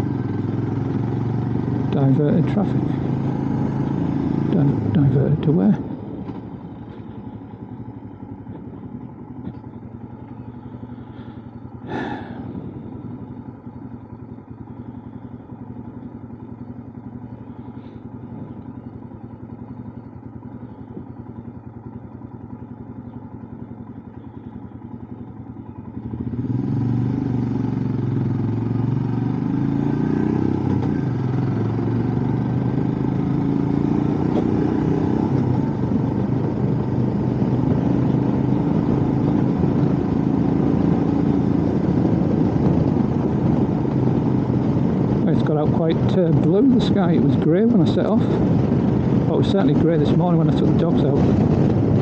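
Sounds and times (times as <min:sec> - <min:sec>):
motorcycle engine: 0:00.0 - 0:52.0
wind on microphone: 0:47.8 - 0:52.0.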